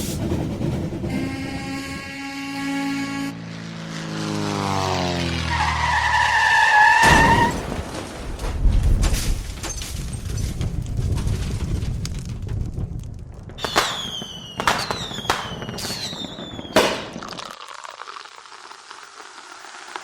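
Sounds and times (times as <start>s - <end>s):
sharp cracks with falling whine: 11.8s - 20.0s.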